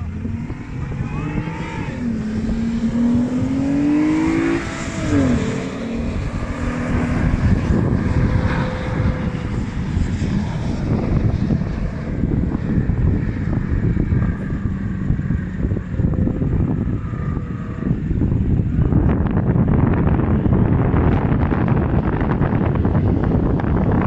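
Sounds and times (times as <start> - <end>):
off-road vehicle engine revving: 0.0 - 9.7.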